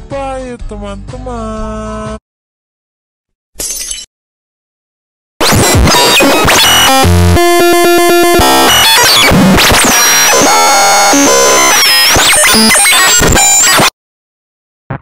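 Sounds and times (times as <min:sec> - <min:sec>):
electronic synthesizer effects: 0:05.4 - 0:13.9.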